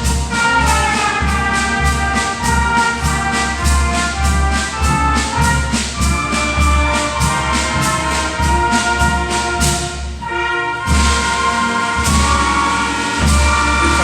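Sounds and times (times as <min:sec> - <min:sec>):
trumpets and trombones: 0:00.0 - 0:14.0
drum or cymbal strokes: 0:10.9 - 0:14.0.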